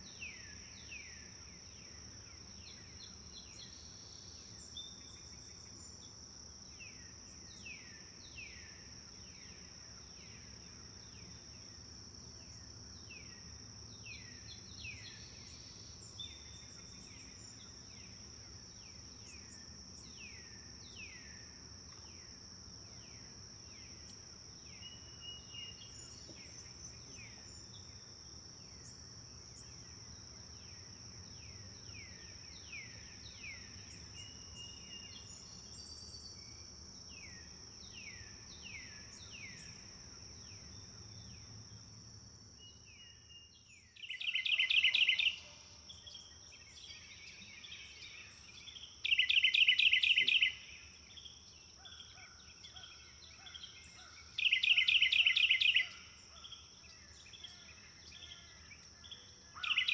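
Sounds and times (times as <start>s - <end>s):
insect drone: 0.0s - 59.9s.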